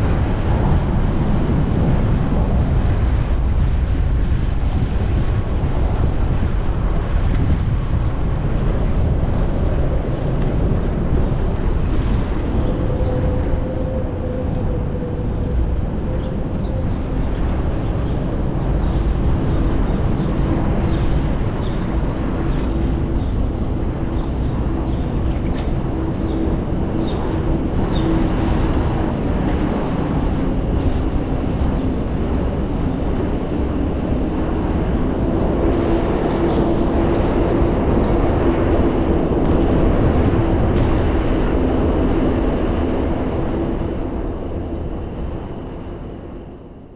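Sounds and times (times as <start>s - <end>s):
hum of nearby vehicles: 0.0s - 46.9s
wind rumbling on microphone: 0.0s - 46.9s.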